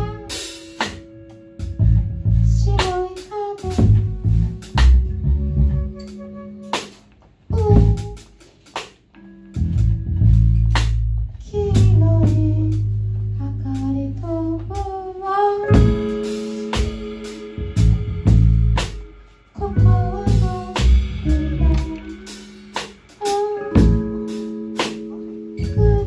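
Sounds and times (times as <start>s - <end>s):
person singing: 0.0s - 0.8s, 2.4s - 4.6s, 7.5s - 8.2s, 11.4s - 17.9s, 19.5s - 22.6s, 23.2s - 26.0s
drum kit hits: 0.0s - 5.2s, 15.7s - 26.0s
heavy bass line: 0.0s - 8.4s, 9.4s - 15.1s, 15.7s - 26.0s.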